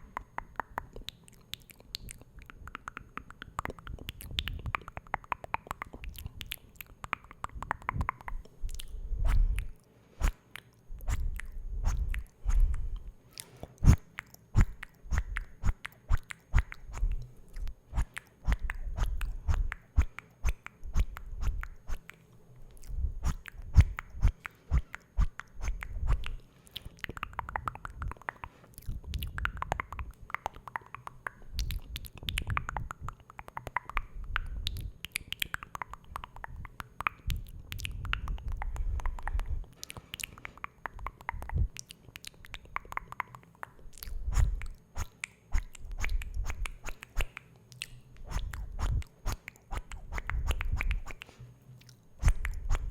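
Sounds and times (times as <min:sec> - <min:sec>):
wavering wet mouth noises: 0:00.0 - 0:52.9
wet mouth clicks: 0:00.0 - 0:52.9
brush against microphone: 0:09.2 - 0:10.4, 0:11.0 - 0:13.0, 0:14.6 - 0:22.1, 0:22.9 - 0:26.4, 0:44.2 - 0:47.3, 0:48.2 - 0:51.5, 0:52.2 - 0:52.9.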